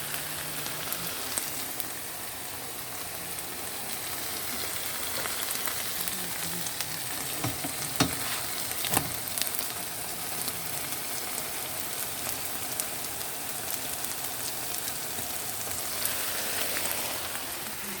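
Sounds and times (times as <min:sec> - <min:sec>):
food sizzling in a pan: 0:00.0 - 0:18.0.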